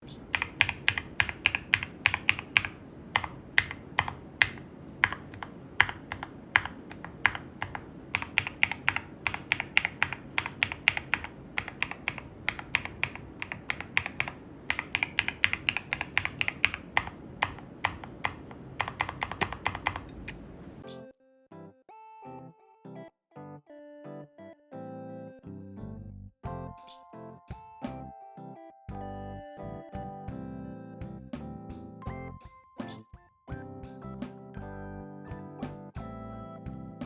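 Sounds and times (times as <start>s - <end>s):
mechanical keyboard keystrokes: 0.0s - 21.1s.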